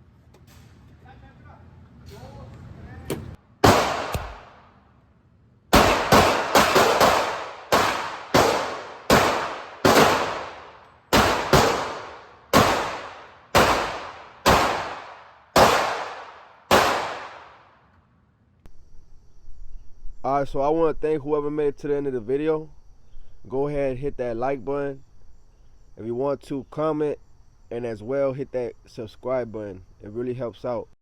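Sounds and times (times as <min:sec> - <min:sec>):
pistol shots echoing indoors: 0:03.6 - 0:04.8, 0:05.7 - 0:17.8.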